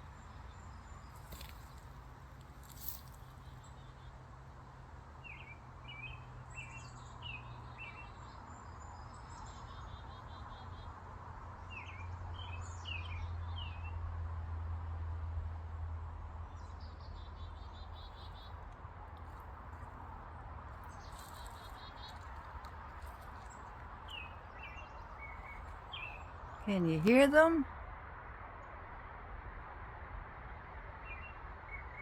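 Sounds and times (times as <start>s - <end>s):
road traffic rumble: 17.9s - 27.6s
songbirds chirping and trilling: 20.7s - 27.1s.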